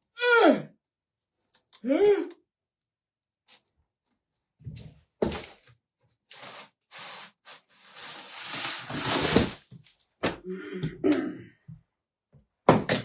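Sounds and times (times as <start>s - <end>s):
scraping rustle of cardboard: 5.4s - 9.8s
cardboard packaging rustling: 6.3s - 9.7s.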